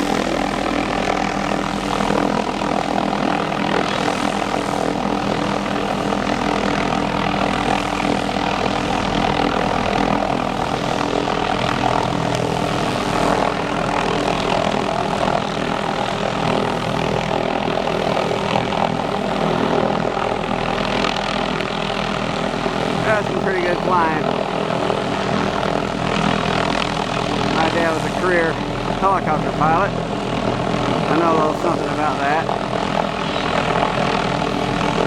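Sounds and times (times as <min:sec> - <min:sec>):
helicopter turbine and rotor: 0:00.0 - 0:35.0.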